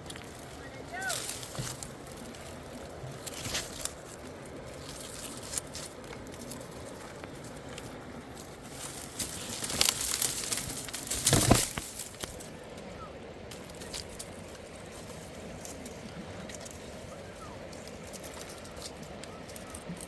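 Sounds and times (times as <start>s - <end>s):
material rustling and crackling: 8.3s - 12.5s.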